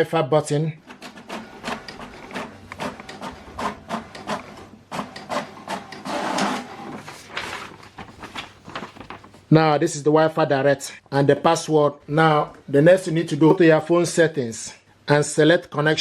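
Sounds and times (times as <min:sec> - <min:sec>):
inkjet printer clicking and shuttling: 0:00.9 - 0:07.6
printer rush of noise: 0:00.9 - 0:09.4.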